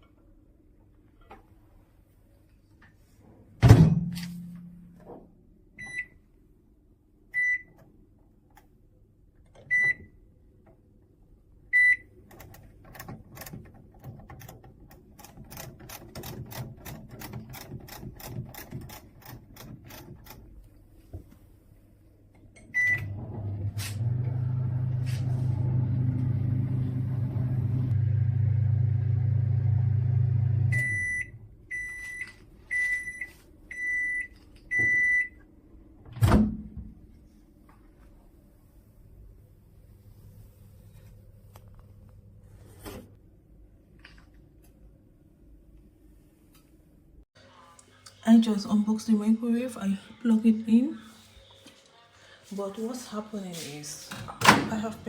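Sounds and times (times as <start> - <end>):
microwave humming: 22.2 - 32.0.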